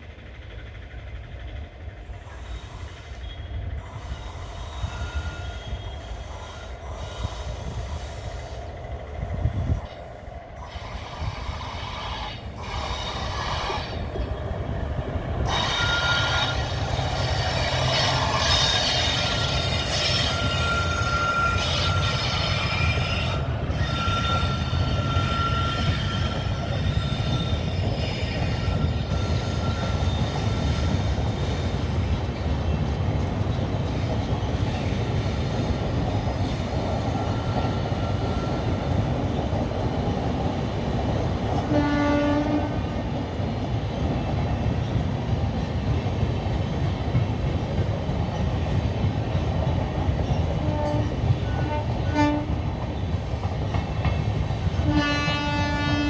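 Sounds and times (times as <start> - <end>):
train wheels squealing: 0.0 - 43.0, 44.0 - 56.0
train rumbling on rails: 0.0 - 56.0
train horn: 2.4 - 8.6, 15.5 - 31.1, 41.6 - 43.0, 50.5 - 52.7, 54.7 - 56.0.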